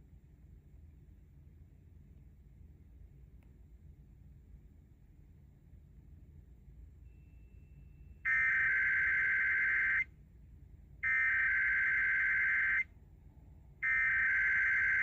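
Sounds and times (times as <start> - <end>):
screechy data tones: 8.3 - 10.0, 11.1 - 12.8, 13.8 - 15.0.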